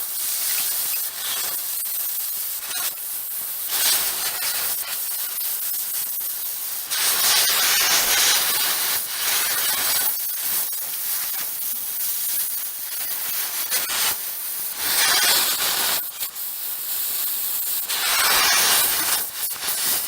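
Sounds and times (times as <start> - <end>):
metal-cutting tool hissing: 12.2 - 16.4, 17.0 - 20.0.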